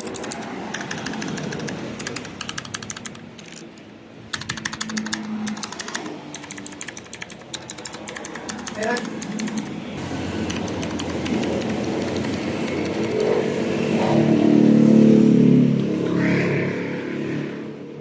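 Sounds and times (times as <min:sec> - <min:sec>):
mechanical keyboard key clicks: 0:00.0 - 0:09.8, 0:10.4 - 0:13.3
vehicle engine passing by: 0:10.0 - 0:18.0.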